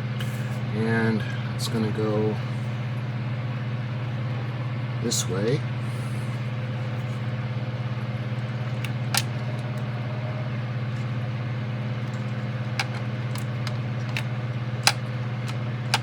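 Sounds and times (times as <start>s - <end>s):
steady low hum: 0.0s - 16.0s
plastic parts clicking: 8.7s - 9.8s, 12.1s - 16.0s.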